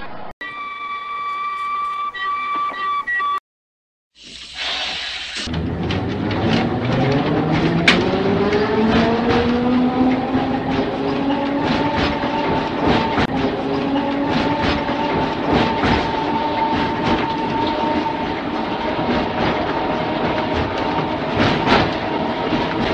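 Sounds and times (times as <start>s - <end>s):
electric tram motor whine: 5.5s - 22.9s
wheels clicking over rail joints: 5.5s - 22.9s.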